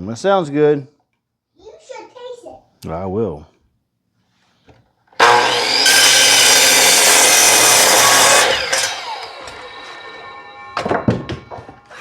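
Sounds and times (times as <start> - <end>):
electric saw cutting wood: 5.2 - 12.0
saw blade spinning down: 5.2 - 12.0.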